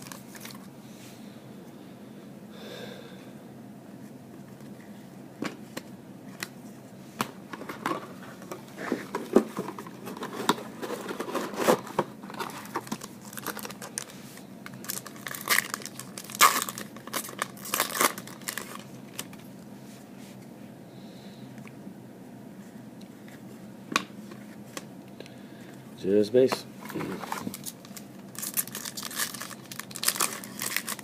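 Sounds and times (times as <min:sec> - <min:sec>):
wrapper tearing and crinkling: 0:10.2 - 0:14.1, 0:14.7 - 0:19.4, 0:27.0 - 0:31.0.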